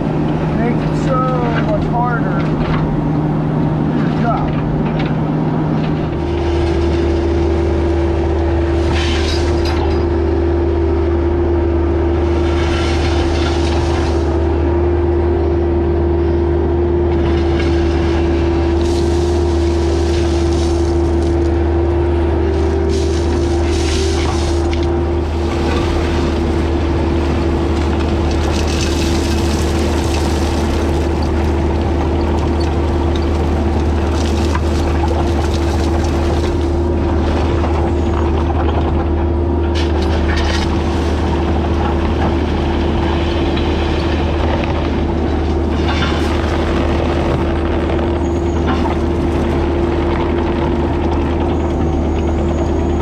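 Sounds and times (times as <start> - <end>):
excavator diesel engine running: 0.0 - 53.0.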